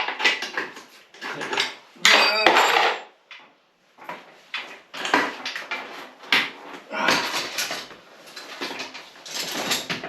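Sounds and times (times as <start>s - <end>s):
metal parts clattering: 0.1s - 3.1s, 7.2s - 10.0s.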